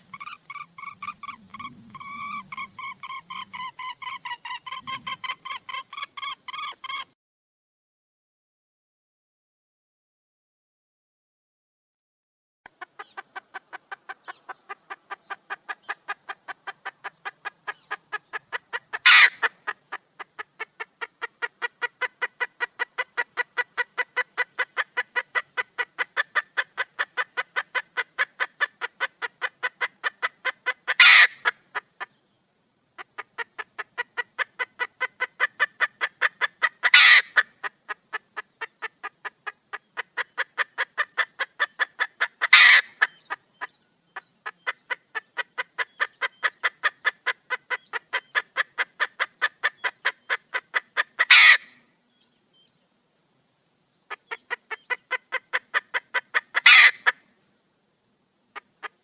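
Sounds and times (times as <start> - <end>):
harsh bird calls: 0.0 - 7.0
hen clucking fast: 0.0 - 7.1, 12.7 - 32.1, 33.0 - 51.7, 54.1 - 57.2.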